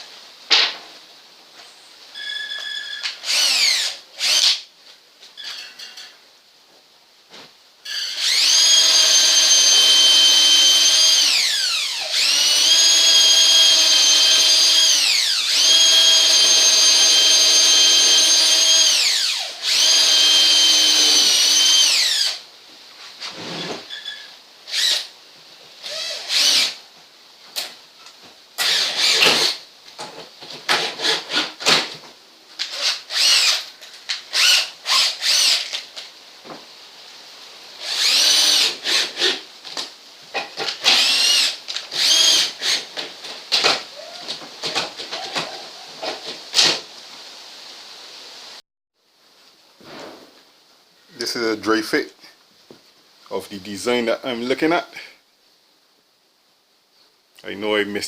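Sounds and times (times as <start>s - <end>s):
power drill whining into wood: 2.2s - 4.6s, 7.9s - 22.4s, 23.4s - 25.1s, 25.8s - 26.8s, 28.6s - 29.6s, 32.6s - 33.7s, 34.3s - 35.8s, 37.8s - 39.4s, 40.8s - 43.0s
short drill bursts: 2.2s - 4.6s, 7.9s - 22.4s, 24.7s - 25.1s, 25.8s - 26.8s, 28.6s - 29.6s, 32.7s - 33.7s, 34.3s - 35.7s, 37.8s - 39.4s, 40.8s - 42.9s.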